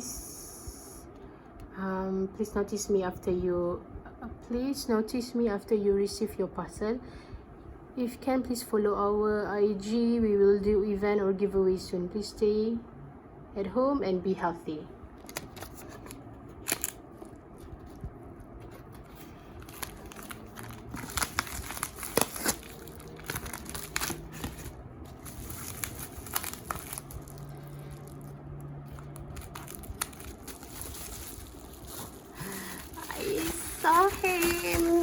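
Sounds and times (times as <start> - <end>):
packaging crinkling and tearing: 15.2 - 35.0.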